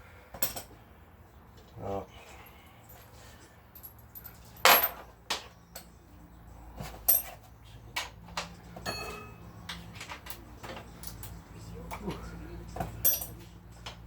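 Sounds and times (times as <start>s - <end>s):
metal tools clinking and clattering: 2.9s - 5.9s, 6.8s - 11.5s, 12.8s - 14.0s.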